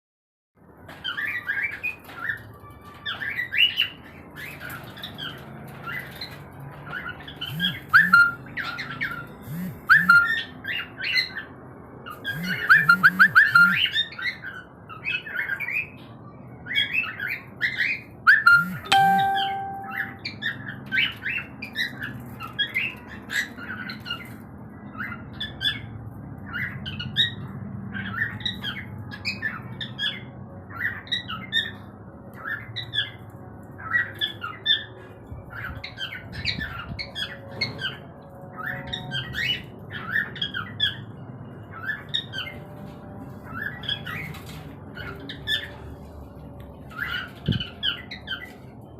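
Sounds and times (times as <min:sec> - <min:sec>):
cockatiels chirping and squawking: 0:01.0 - 0:11.5, 0:12.1 - 0:16.0, 0:46.9 - 0:48.6.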